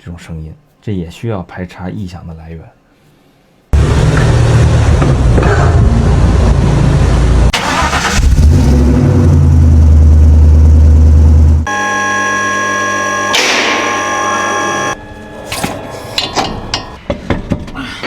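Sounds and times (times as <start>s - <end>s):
car engine running: 3.8s - 11.7s
steady whine at fixed pitches: 10.8s - 17.0s.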